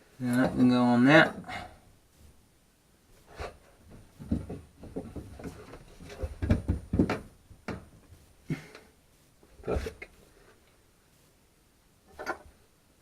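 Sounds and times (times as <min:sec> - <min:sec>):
copper pipe knocks and clunks: 0:03.9 - 0:08.0.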